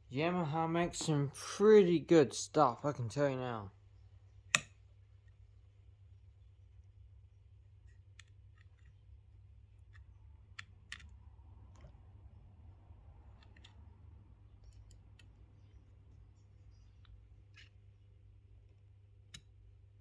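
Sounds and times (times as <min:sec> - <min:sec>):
low steady hum: 0:00.0 - 0:20.0
small parts clicking and tapping: 0:07.8 - 0:12.0, 0:13.3 - 0:14.0.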